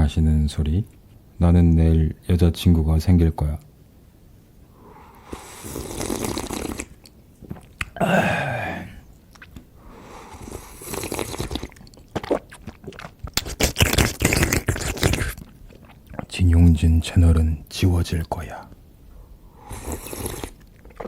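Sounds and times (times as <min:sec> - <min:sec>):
sipping noises: 0:05.2 - 0:09.6, 0:10.4 - 0:16.4
low voiced ah: 0:08.0 - 0:09.0
crunchy chewing: 0:10.9 - 0:16.3.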